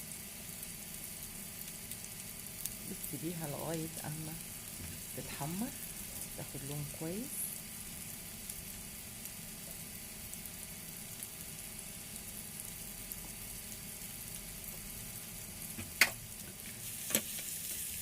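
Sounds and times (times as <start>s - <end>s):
food sizzling in a pan: 0.0s - 18.0s.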